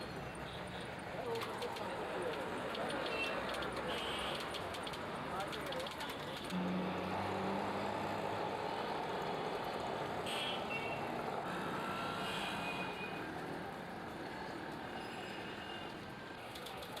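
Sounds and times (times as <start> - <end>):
road traffic noise: 0.0 - 17.0.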